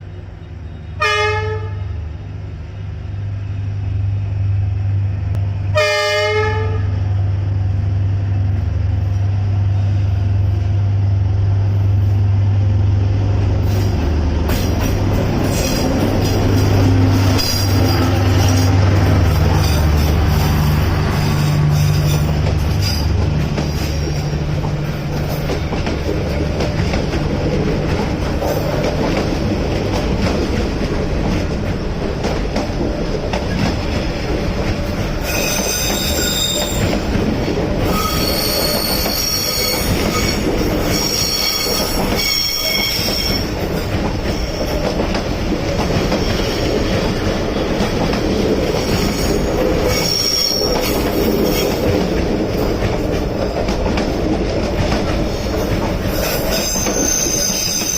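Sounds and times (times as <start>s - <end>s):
passenger train rumbling on track: 0.0s - 57.9s
high wheel squeal: 35.2s - 36.9s, 37.8s - 43.6s, 49.0s - 51.6s, 56.1s - 57.9s.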